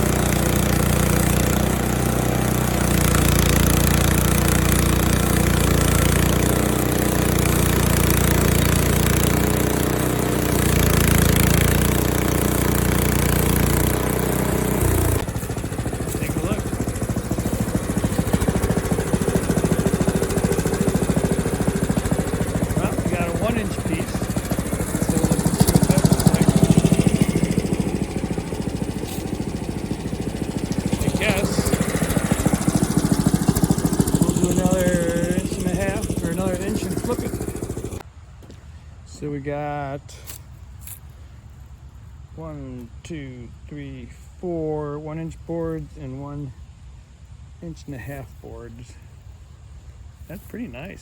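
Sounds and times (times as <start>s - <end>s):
bandsaw mill sawing log: 0.0s - 38.0s
small gasoline engine running: 0.0s - 38.1s.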